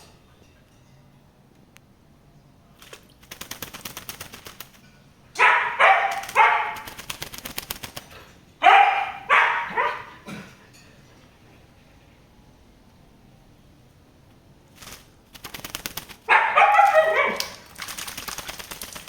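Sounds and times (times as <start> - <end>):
wings beating water: 2.8 - 4.8, 5.4 - 8.2, 14.7 - 19.0.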